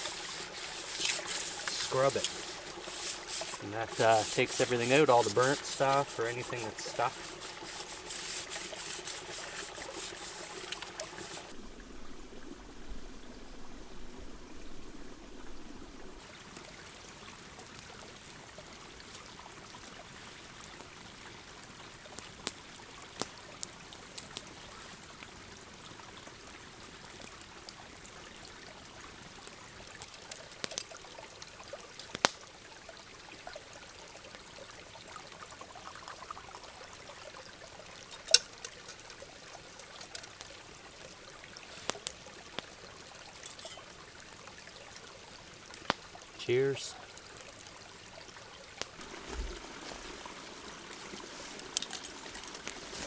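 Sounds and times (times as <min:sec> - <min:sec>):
pot being scrubbed: 0:00.0 - 0:11.6, 0:38.0 - 0:39.2, 0:39.8 - 0:40.4, 0:43.4 - 0:43.9, 0:49.0 - 0:53.0
river running: 0:00.0 - 0:53.0.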